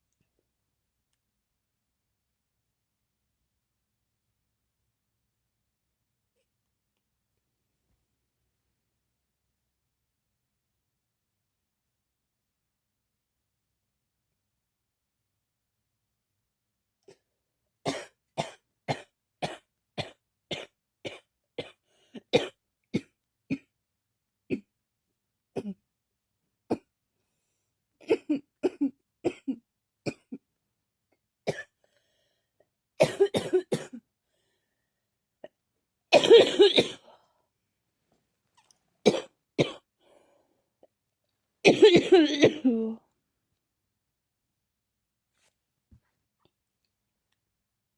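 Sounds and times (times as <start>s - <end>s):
person coughing: 28.0s - 30.4s, 33.0s - 34.0s, 36.2s - 37.1s, 39.1s - 39.9s, 41.7s - 42.9s.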